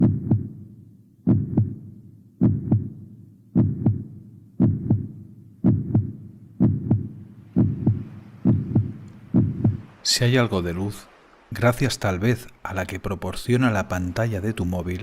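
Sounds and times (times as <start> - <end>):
slow heartbeat: 0.0 - 9.9.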